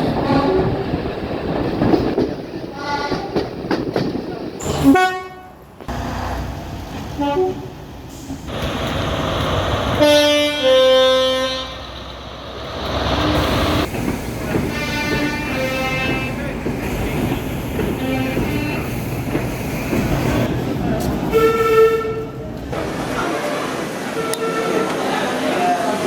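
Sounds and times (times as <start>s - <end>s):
moving train rumble: 0.0s - 26.0s
train horn blasts: 4.6s - 5.6s, 10.0s - 11.9s, 14.7s - 16.3s, 21.3s - 22.4s, 24.2s - 25.0s.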